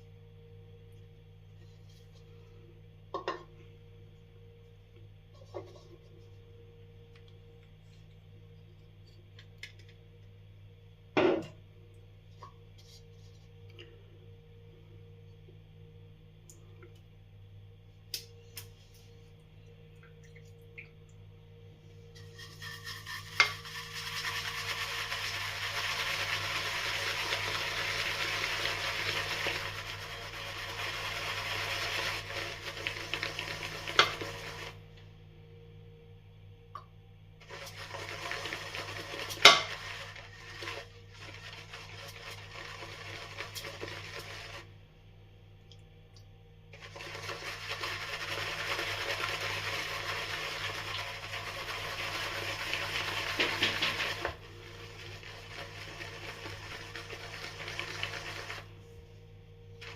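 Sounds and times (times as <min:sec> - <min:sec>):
brush swishing shave cream: 0:22.3 - 0:34.6.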